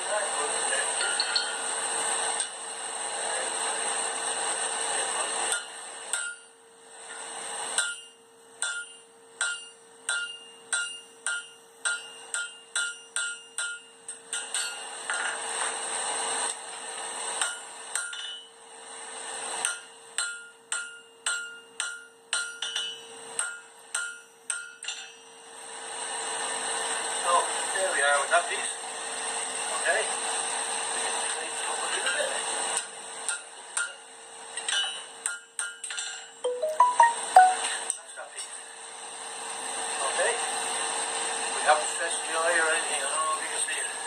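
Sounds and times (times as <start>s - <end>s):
hammer striking steel on anvil: 1.0s - 1.6s, 5.5s - 6.5s, 7.8s - 15.2s, 17.4s - 18.5s, 19.6s - 25.2s.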